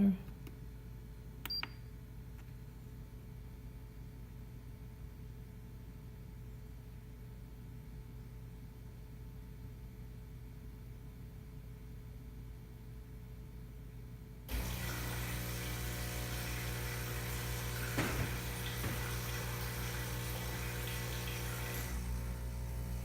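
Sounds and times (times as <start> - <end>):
espresso machine pump humming: 14.5 - 23.0
water hissing: 14.5 - 23.0.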